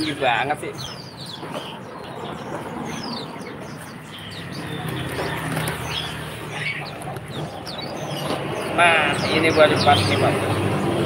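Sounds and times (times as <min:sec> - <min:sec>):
caged songbirds chirping: 0:00.0 - 0:11.0.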